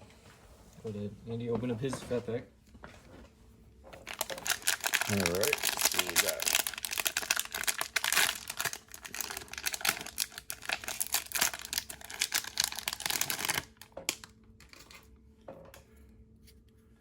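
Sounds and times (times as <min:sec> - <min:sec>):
wrapper crinkling and tearing: 0:04.0 - 0:14.8.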